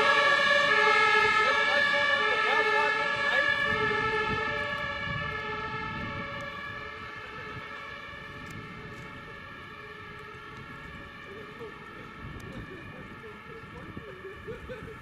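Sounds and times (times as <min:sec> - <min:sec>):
fire engine siren: 0:00.0 - 0:15.0.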